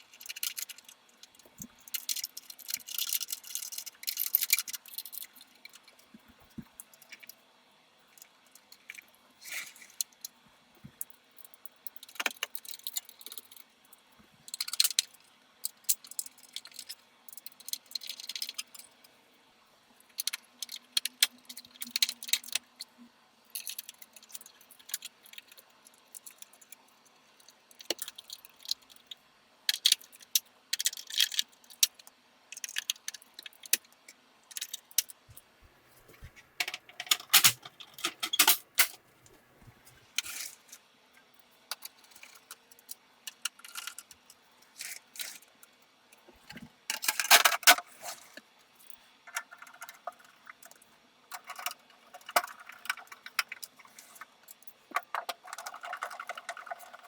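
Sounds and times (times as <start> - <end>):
small metal parts clinking: 0.1 - 6.1, 29.7 - 31.9, 36.6 - 39.0, 43.3 - 44.2.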